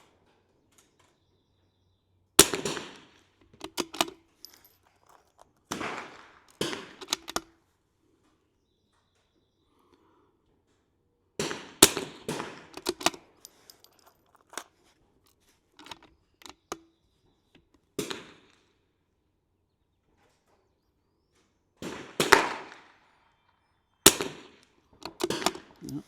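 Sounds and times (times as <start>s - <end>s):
rifle shots cracking: 2.4s - 3.1s, 5.7s - 7.4s, 11.4s - 13.3s, 21.8s - 22.9s, 24.1s - 26.0s.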